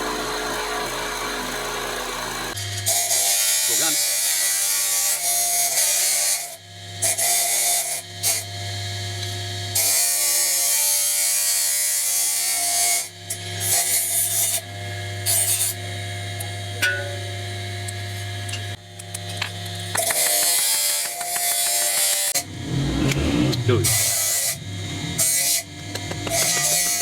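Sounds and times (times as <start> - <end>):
electric motor humming: 19.8 - 27.0.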